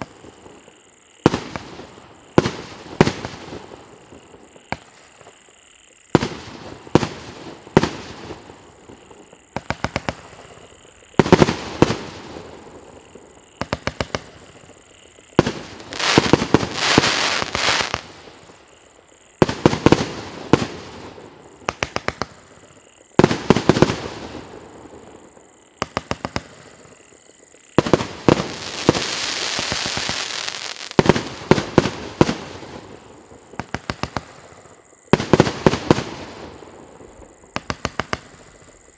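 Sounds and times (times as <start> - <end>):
fireworks crackling and hissing: 0.0 - 38.9
firework bangs: 6.2 - 18.4, 25.8 - 36.6.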